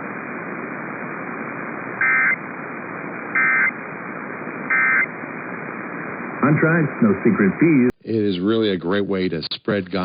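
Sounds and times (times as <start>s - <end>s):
radio hiss: 0.0s - 10.0s
two-tone digital data bursts: 2.0s - 2.4s, 3.4s - 3.7s, 4.7s - 5.1s.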